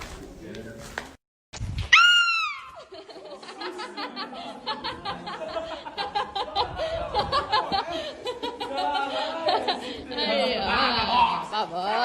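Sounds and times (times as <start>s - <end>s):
shrill scream: 1.9s - 2.8s
people laughing: 2.7s - 12.0s
people chattering: 3.0s - 12.0s.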